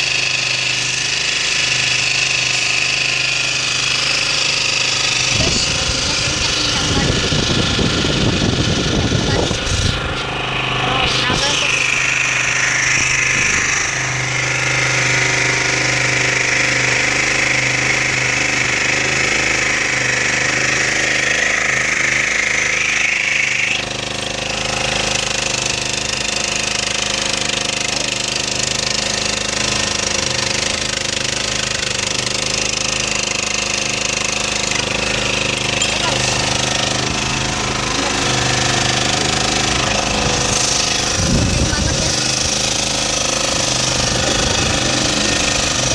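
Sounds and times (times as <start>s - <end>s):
generator engine rattling: 0.0s - 45.9s.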